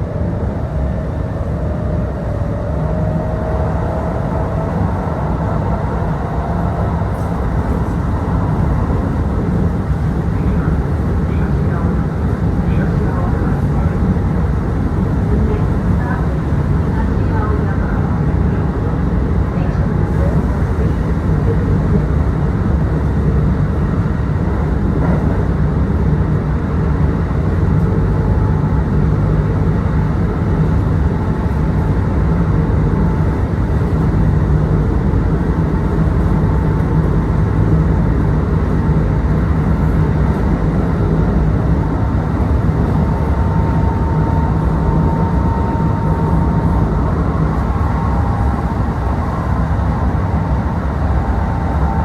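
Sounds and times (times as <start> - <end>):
train wheels rumbling on rails: 0.0 - 52.0.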